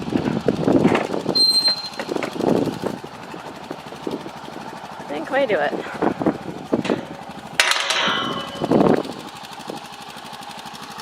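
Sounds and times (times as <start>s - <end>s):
engine idling: 0.0s - 11.0s
sharp metallic clank: 6.8s - 9.0s.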